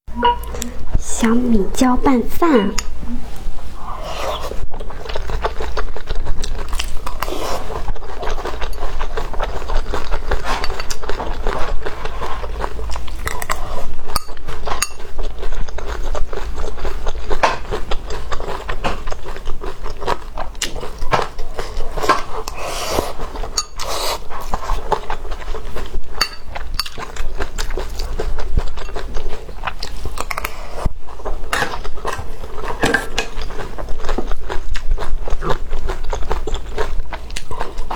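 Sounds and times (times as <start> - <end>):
chewing and biting: 4.3 - 37.9
cutlery clicking against a bowl: 14.2 - 15.0, 26.2 - 27.1.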